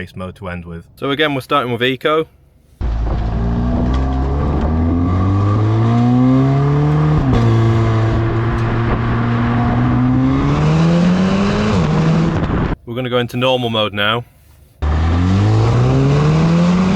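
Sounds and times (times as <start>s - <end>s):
car engine accelerating: 2.8s - 12.8s, 14.8s - 16.9s.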